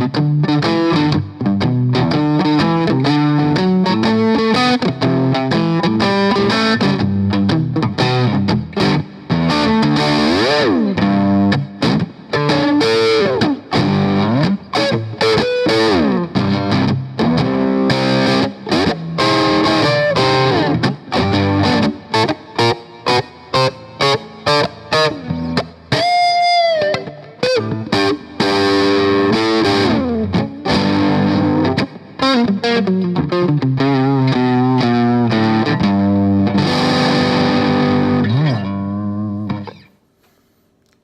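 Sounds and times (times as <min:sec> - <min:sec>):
overdriven electric guitar: 0:00.0 - 0:41.0.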